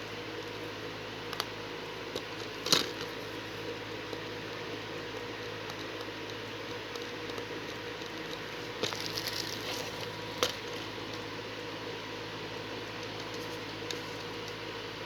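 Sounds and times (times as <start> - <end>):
steady hum: 0.0 - 15.0
crackly packaging rustle: 7.0 - 11.3.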